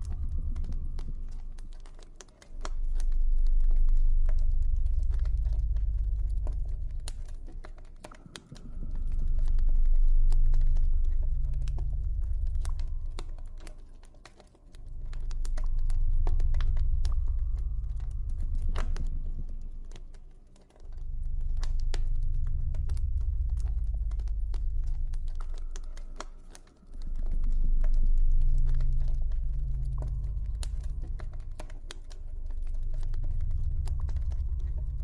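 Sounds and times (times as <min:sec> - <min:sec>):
deep ambient drone: 0:00.0 - 0:35.0
campfire crackling and popping: 0:12.4 - 0:35.0.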